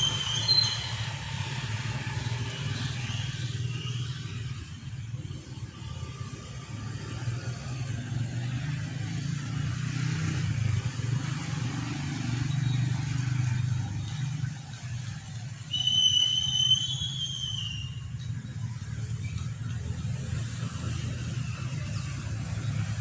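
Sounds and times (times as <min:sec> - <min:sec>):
high clear whistling tone: 0:00.0 - 0:01.8, 0:15.6 - 0:18.6
rumble of road traffic: 0:00.0 - 0:23.0.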